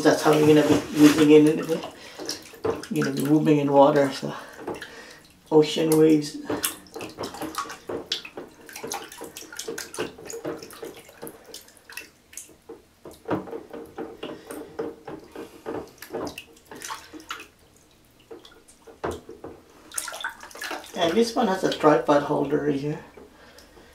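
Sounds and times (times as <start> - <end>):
water sloshing and splashing: 0.0 - 23.9.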